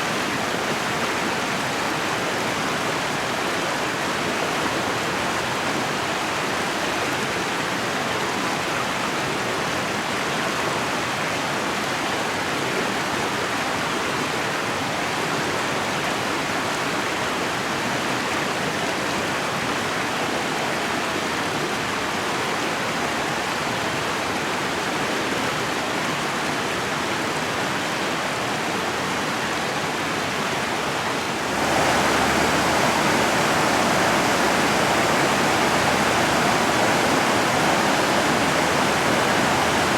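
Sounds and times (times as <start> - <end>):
river flowing over rapids: 28.4 - 39.9.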